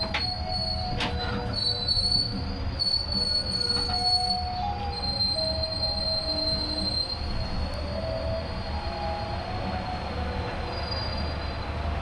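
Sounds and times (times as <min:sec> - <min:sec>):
train running rumble: 0:00.0 - 0:12.0
train wheels squealing: 0:00.0 - 0:12.0.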